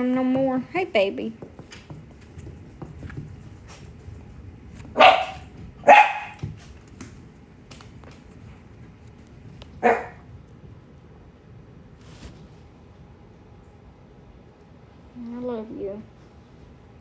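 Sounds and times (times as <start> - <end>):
dog barking: 5.0 - 6.4, 9.8 - 10.2.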